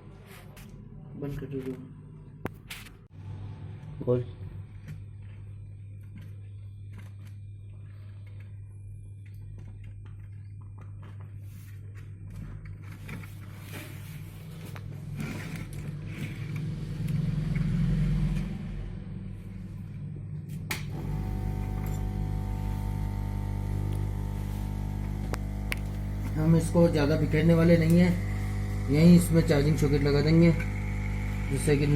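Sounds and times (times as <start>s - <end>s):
electrical hum: 3.1s - 31.9s
scraping and handling noises: 9.5s - 16.8s.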